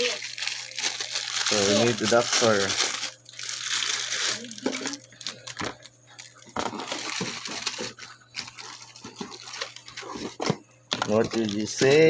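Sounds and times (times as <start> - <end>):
packaging rustling: 0.0 - 12.0
clicks and knocks of small parts: 6.5 - 12.0.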